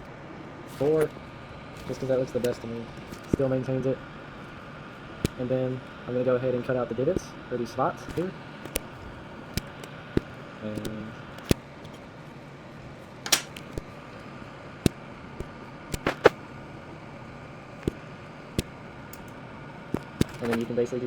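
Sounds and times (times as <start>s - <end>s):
computer fans humming: 0.0s - 21.0s
computer mouse clicking: 8.2s - 12.0s.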